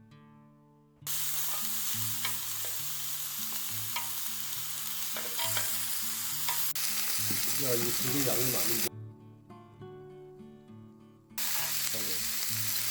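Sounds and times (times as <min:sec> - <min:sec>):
food sizzling in hot fat: 0:01.1 - 0:08.9, 0:11.4 - 0:12.9.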